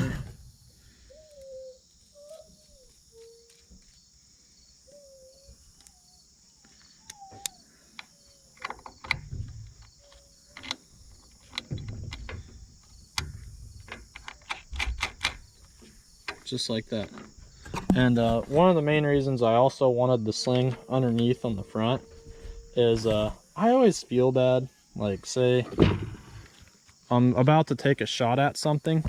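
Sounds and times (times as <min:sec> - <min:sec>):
high insect chirring: 0:00.1 - 0:25.6
metal clicks and knocks: 0:07.4 - 0:15.6.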